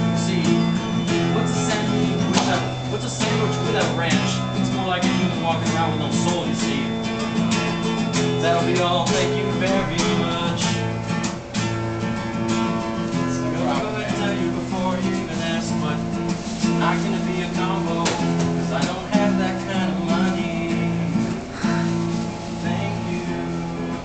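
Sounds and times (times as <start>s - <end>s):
acoustic guitar strumming chords: 0.0s - 24.0s.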